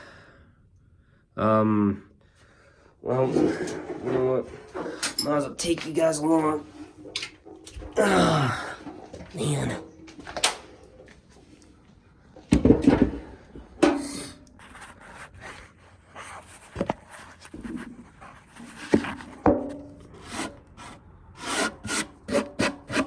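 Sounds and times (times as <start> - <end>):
wooden knocks: 12.4 - 14.2
rustling and rubbing: 14.1 - 22.0.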